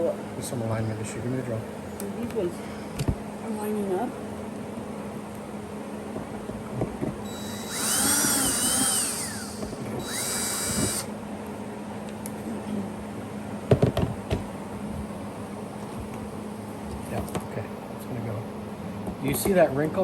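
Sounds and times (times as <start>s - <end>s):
cordless drill whining: 7.2s - 11.2s.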